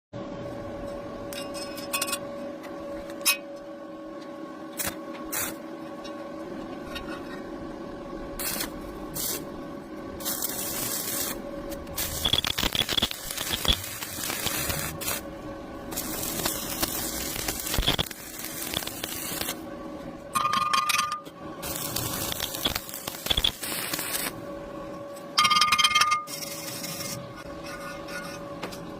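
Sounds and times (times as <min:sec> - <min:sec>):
steady hum: 0:00.2 - 0:28.9
arc welding crackling hiss: 0:04.8 - 0:05.7, 0:08.4 - 0:09.6, 0:10.2 - 0:19.7, 0:21.6 - 0:24.5.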